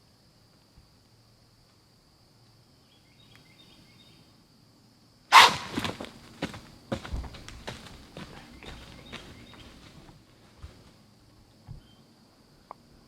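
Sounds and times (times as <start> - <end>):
high insect drone: 0.0 - 13.0
loud crunch and rustle: 5.3 - 11.0
footsteps in dry leaves: 5.5 - 10.9.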